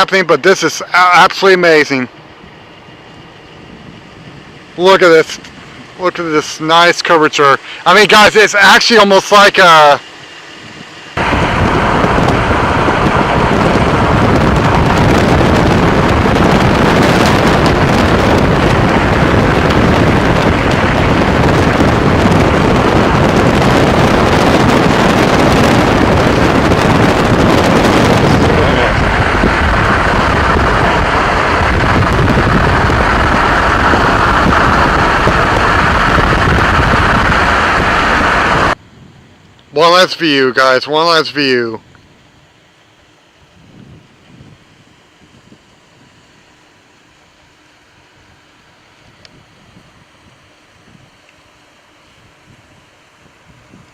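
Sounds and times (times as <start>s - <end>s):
wind rushing over microphone: 0.0s - 41.6s, 43.2s - 46.6s, 47.3s - 51.2s, 51.8s - 53.9s
moving vehicle rumble: 9.6s - 39.8s.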